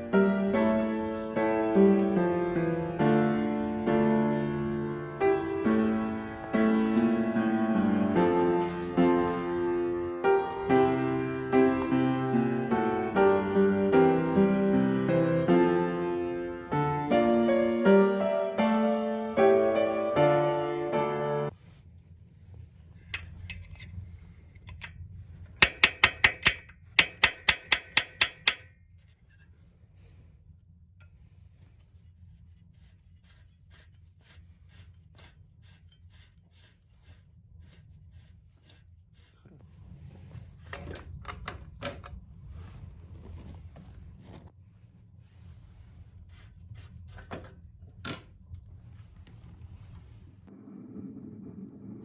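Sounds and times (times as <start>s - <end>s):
metal tools knocking and clicking: 25.6s - 28.7s.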